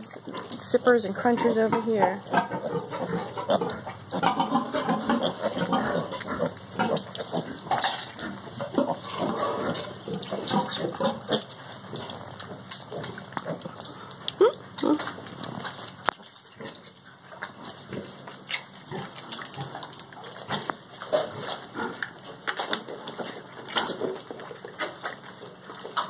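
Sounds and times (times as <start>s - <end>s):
piglets grunting: 0.0s - 15.6s
piglets squealing: 2.2s - 11.5s
smacking and crunching: 2.4s - 26.0s.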